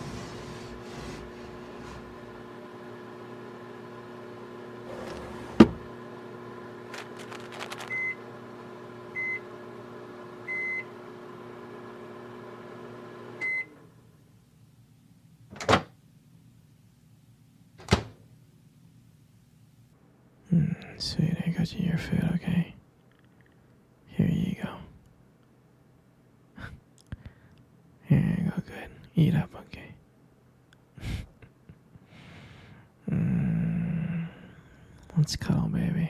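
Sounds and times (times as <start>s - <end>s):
microwave oven humming: 0.0s - 16.7s, 32.0s - 35.4s.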